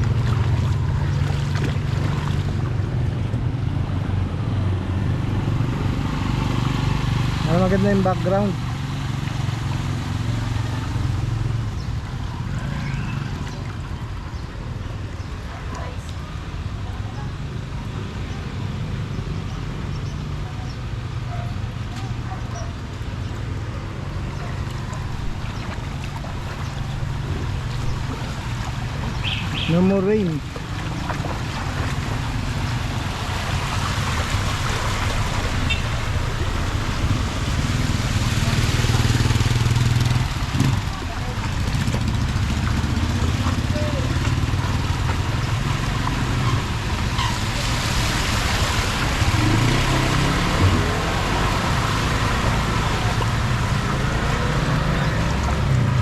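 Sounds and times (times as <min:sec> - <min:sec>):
vehicle engine humming: 0:00.0 - 0:16.6, 0:22.9 - 0:56.0
water rushing: 0:00.0 - 0:17.0, 0:22.7 - 0:56.0
low rumble: 0:30.6 - 0:40.5.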